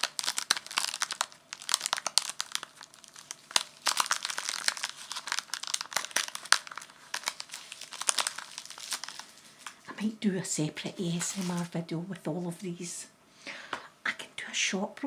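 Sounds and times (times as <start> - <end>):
wrapping paper crumpling: 0.0 - 9.9, 11.0 - 11.8.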